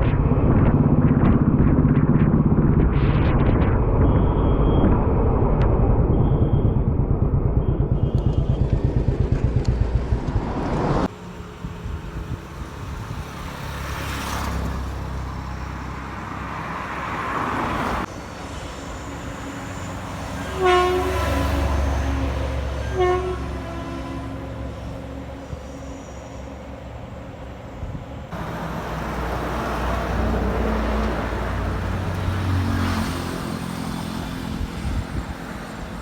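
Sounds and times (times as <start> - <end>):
steady rushing noise: 0.0 - 14.0
heavy vehicle rumble: 0.0 - 36.0
loud horn blasts: 19.9 - 26.8.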